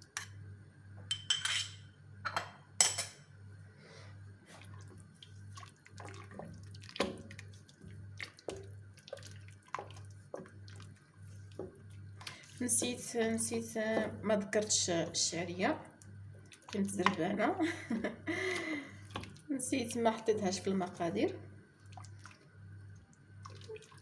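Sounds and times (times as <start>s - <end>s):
spoon clinking against pot: 1.1s - 3.2s
wet scraping pours: 4.5s - 13.8s, 23.4s - 24.0s
liquid plops: 4.6s - 14.8s, 15.7s - 19.5s, 21.8s - 24.0s.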